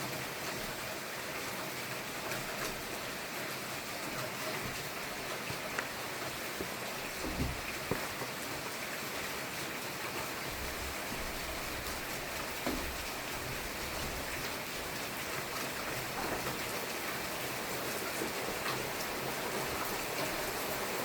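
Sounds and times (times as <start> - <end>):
steady rain hiss: 0.0 - 21.0
rain drop taps: 4.2 - 8.8, 10.5 - 14.5.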